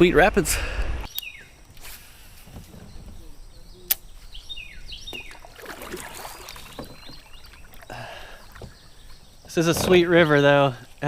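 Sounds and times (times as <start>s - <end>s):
bird chirps: 1.1s - 1.6s, 2.6s - 11.0s
water splashing: 5.0s - 10.8s
paddle strokes: 5.1s - 11.0s.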